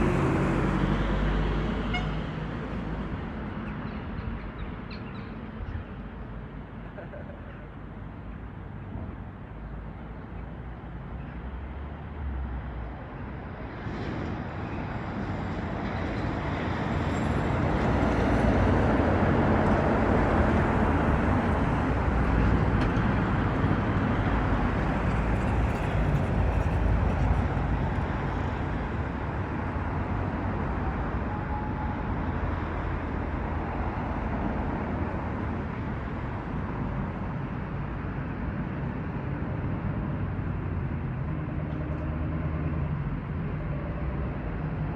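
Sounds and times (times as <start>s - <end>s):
vehicle running past: 0.0s - 2.5s.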